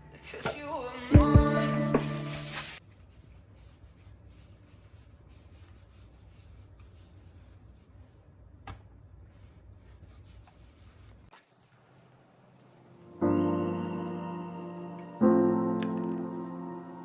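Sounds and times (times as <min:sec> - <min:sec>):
rubbing handling noises: 0:09.2 - 0:17.0.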